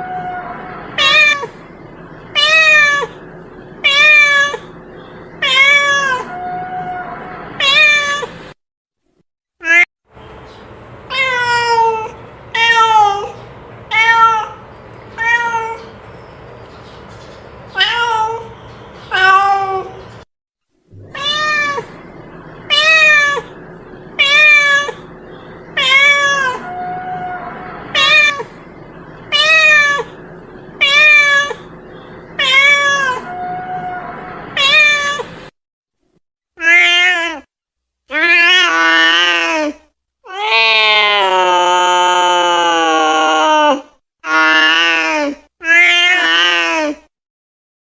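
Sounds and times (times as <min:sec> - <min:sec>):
cat meowing: 0:00.0 - 0:01.6, 0:02.4 - 0:03.2, 0:03.8 - 0:04.8, 0:05.4 - 0:08.4, 0:11.1 - 0:14.6, 0:15.2 - 0:15.9, 0:17.8 - 0:18.5, 0:19.1 - 0:20.0, 0:21.0 - 0:22.0, 0:22.7 - 0:23.5, 0:24.2 - 0:25.0, 0:25.8 - 0:28.6, 0:29.3 - 0:30.2, 0:30.8 - 0:31.7, 0:32.4 - 0:35.4, 0:36.6 - 0:37.5, 0:45.6 - 0:47.0.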